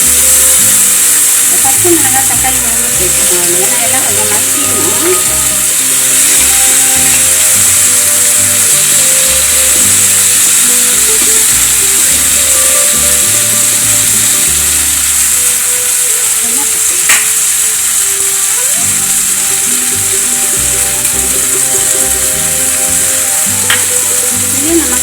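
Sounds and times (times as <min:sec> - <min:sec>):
background music: 0:00.0 - 0:25.0
food sizzling in hot oil: 0:00.0 - 0:25.0.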